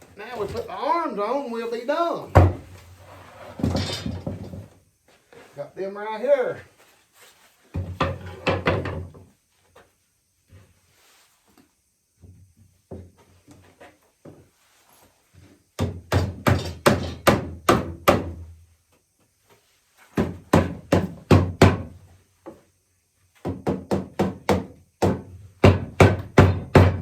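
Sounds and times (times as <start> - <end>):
hammer striking wood: 15.8 - 18.4, 20.2 - 21.9, 23.4 - 27.0.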